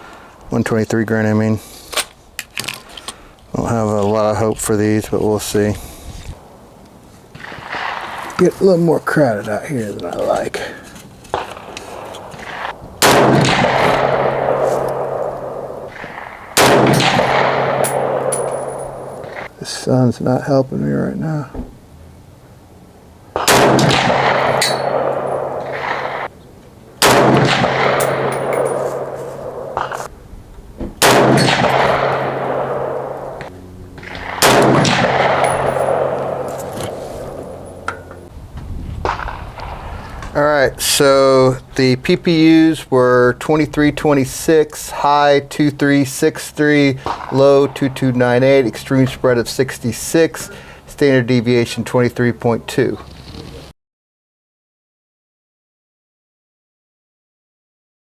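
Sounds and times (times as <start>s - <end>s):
rifle shot with echo: 5.6s - 19.5s, 23.3s - 26.3s, 27.0s - 30.1s, 31.0s - 38.3s, 39.0s - 50.6s.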